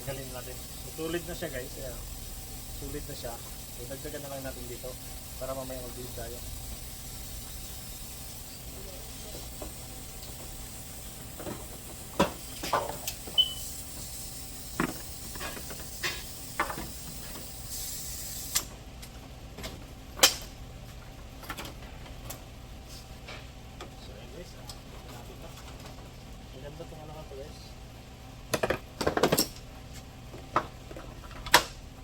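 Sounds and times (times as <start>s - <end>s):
steady hiss: 0.0s - 18.7s.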